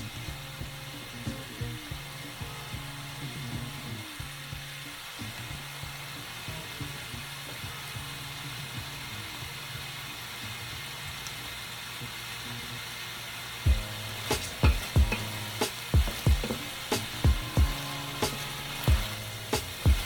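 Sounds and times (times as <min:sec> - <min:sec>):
vegetables sizzling in a pan: 0:00.0 - 0:20.0
utensil knocking against pan: 0:13.7 - 0:20.0.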